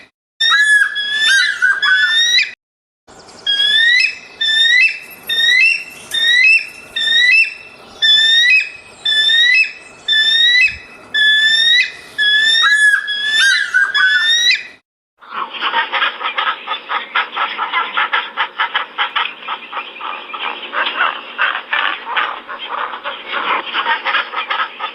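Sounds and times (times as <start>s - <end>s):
bird whistled calls: 0.0s - 2.6s, 3.3s - 14.8s
harsh bird call: 0.0s - 2.6s, 3.5s - 14.8s.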